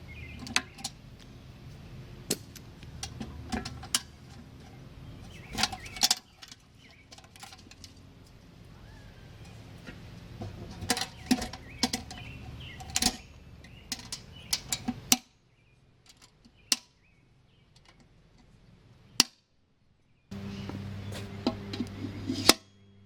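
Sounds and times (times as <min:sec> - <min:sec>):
low steady hum: 0:00.0 - 0:23.0
hard parts clicking and clinking: 0:02.3 - 0:08.0, 0:09.4 - 0:15.3, 0:16.0 - 0:16.9.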